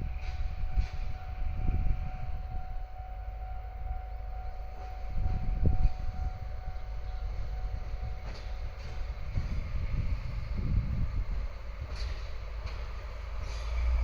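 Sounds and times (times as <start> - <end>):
steady high tone: 0.0 - 10.0
train rumbling by: 0.0 - 14.0.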